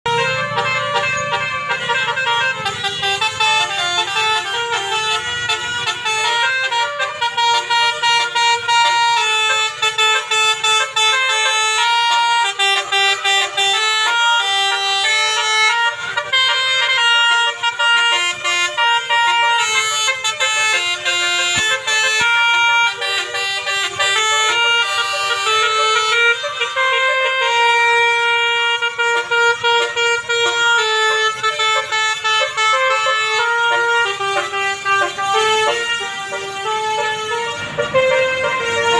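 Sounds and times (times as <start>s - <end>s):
bus horn playing a melody: 0.0s - 38.9s.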